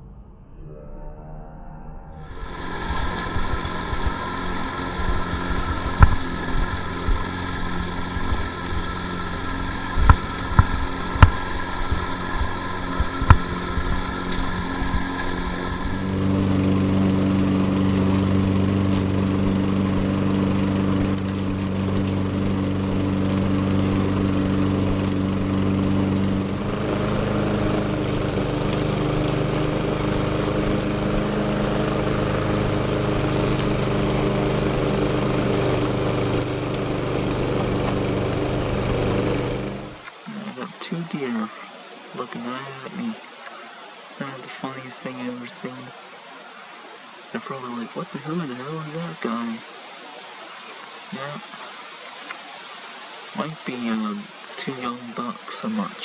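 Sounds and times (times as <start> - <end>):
lawn mower engine running: 2.2 - 56.0
clicks: 2.3 - 16.2.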